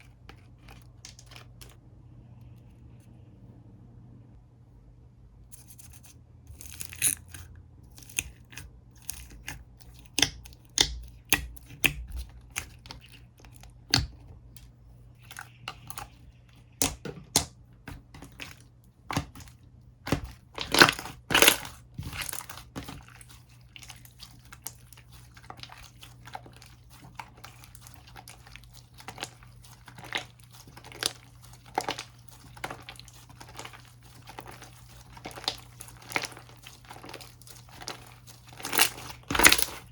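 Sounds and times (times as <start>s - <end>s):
slime popping and crackling: 16.8s - 39.9s.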